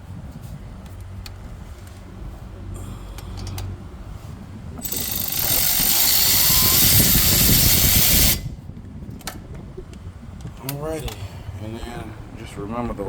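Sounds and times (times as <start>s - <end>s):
cordless electric ratchet running: 4.8s - 8.6s.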